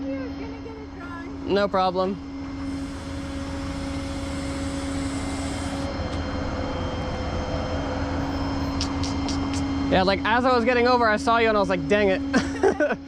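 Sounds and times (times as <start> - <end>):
truck cab engine and road noise: 2.2 - 12.8
high hiss: 2.6 - 5.9.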